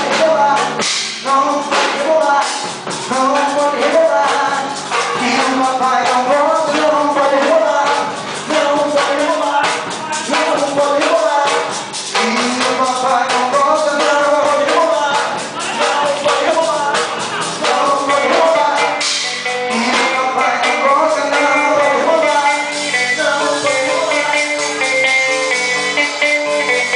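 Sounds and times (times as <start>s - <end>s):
band music with singing: 0.0s - 26.9s
drums with steady beat: 0.0s - 26.9s.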